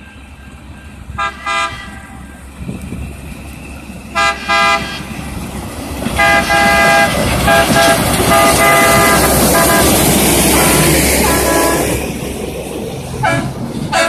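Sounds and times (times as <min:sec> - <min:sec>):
rail equipment rumbling: 0:00.0 - 0:14.0
air horn blasts: 0:01.2 - 0:02.2, 0:04.2 - 0:05.0, 0:06.2 - 0:12.0, 0:13.2 - 0:14.0.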